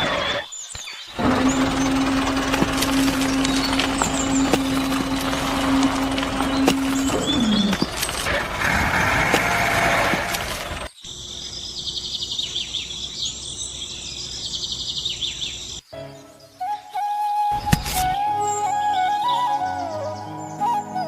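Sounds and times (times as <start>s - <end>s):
rough outdoor noise: 0.0s - 15.9s
small birds chirping and trilling: 0.0s - 16.9s.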